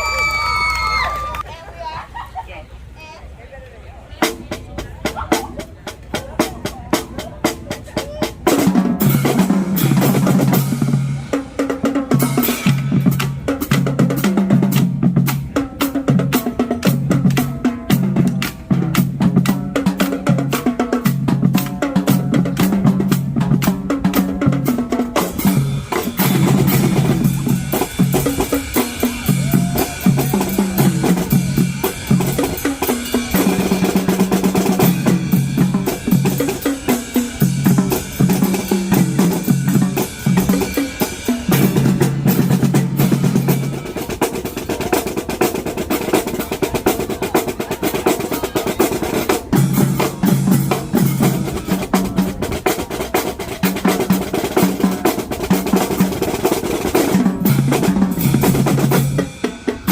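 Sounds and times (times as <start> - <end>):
bass drum notes: 4.2 - 59.9
snare drum strokes and rolls: 4.2 - 59.9.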